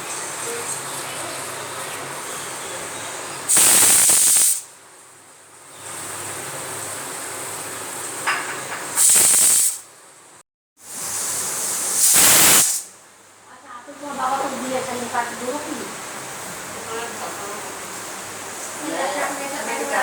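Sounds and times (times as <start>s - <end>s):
soft steam hiss: 0.0s - 10.2s, 10.8s - 20.0s
pressure cooker whistle hissing: 3.5s - 4.7s, 9.0s - 9.9s, 11.0s - 12.9s.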